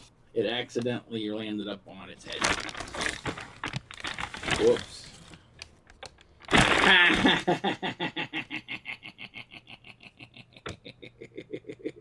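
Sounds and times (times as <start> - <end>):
man laughing: 6.7 - 12.0
rapid giggles: 7.1 - 12.0.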